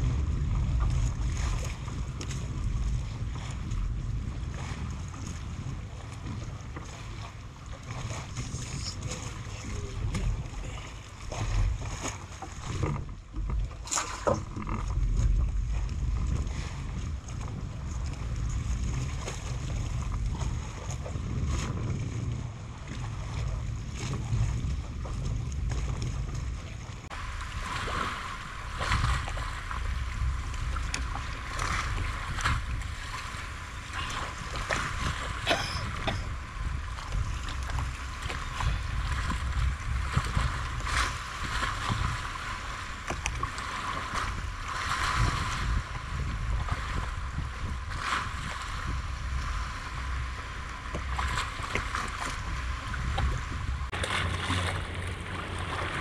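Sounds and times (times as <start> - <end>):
wind rumbling on microphone: 0.0 - 56.0
harbour ambience: 5.4 - 16.2, 22.3 - 45.0, 48.5 - 56.0.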